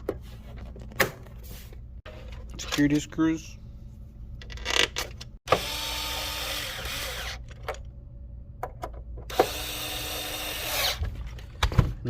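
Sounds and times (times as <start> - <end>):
electric screwdriver running: 5.5 - 7.4, 9.3 - 11.0.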